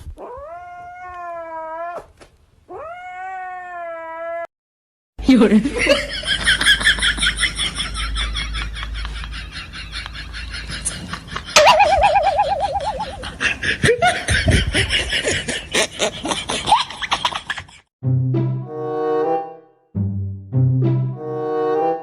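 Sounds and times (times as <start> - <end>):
people laughing: 5.8 - 11.6
wavering tone: 11.6 - 13.3
music: 18.0 - 22.0.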